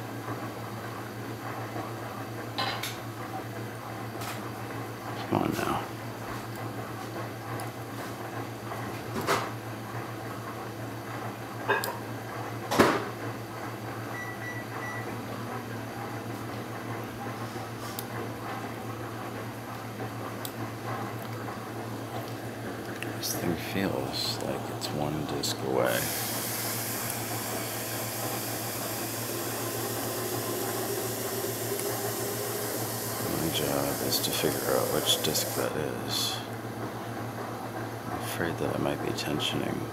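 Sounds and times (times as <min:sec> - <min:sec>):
steady low hum: 0:13.6 - 0:37.1
even hiss: 0:25.8 - 0:29.9, 0:30.6 - 0:35.8.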